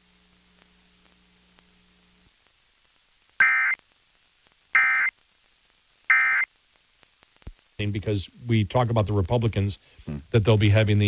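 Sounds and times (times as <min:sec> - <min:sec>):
digital data tone bursts: 0:03.4 - 0:03.8, 0:04.8 - 0:05.1, 0:06.1 - 0:06.5.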